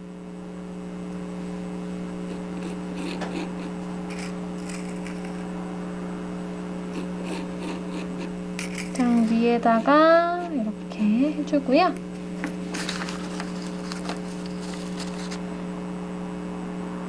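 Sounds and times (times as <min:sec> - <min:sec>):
electrical hum: 0:00.0 - 0:17.0
miniature bricks scraping and tapping: 0:03.0 - 0:05.4, 0:08.6 - 0:09.4.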